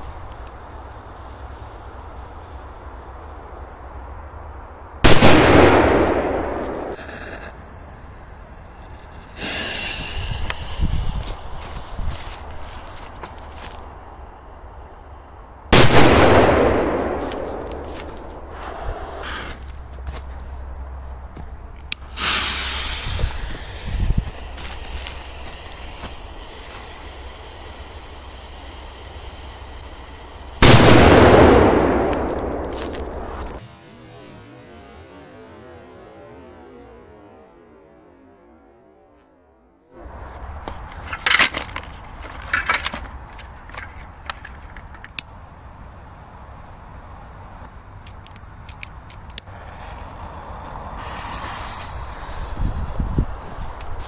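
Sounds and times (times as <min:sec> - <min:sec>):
steady rushing noise: 0:00.0 - 0:39.2
firecracker blast: 0:05.0 - 0:12.2, 0:15.7 - 0:19.6, 0:22.0 - 0:34.7
hissing: 0:05.6 - 0:19.7, 0:21.9 - 0:33.6, 0:40.0 - 0:54.0.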